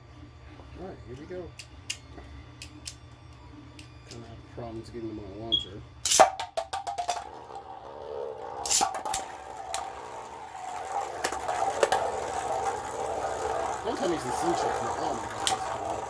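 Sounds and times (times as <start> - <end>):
spinning tops whirring: 5.1 - 16.0
spinning tops clacking together: 6.0 - 16.0
rattle of clicks: 6.9 - 16.0.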